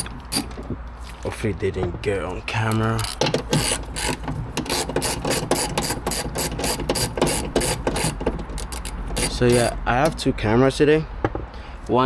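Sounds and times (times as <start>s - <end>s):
hand ratchet clicking: 0.0s - 0.6s, 2.6s - 10.2s.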